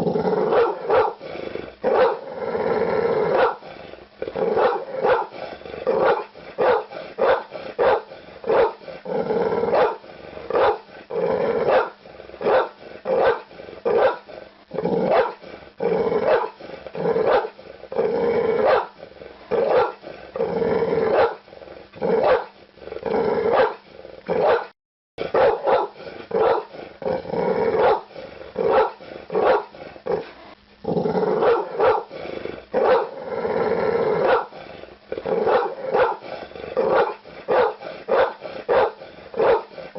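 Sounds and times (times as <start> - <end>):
dog barking: 0.5 - 1.2, 1.9 - 2.2, 3.3 - 3.6, 4.6 - 5.3, 6.0 - 8.8, 9.7 - 10.8, 11.7 - 14.3, 15.1 - 15.4, 16.3 - 16.6, 17.3 - 17.6, 18.6 - 19.0, 19.6 - 20.0, 21.1 - 21.4, 22.2 - 22.5, 23.5 - 23.8, 24.4 - 26.7, 27.8 - 29.8, 31.4 - 32.1, 32.8 - 33.2, 34.2 - 34.5, 35.4 - 39.8.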